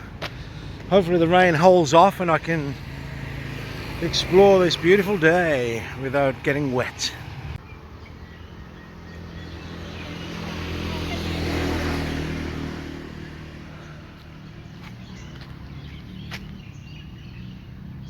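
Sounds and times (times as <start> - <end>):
motor vehicle passing by: 0.0 - 18.0.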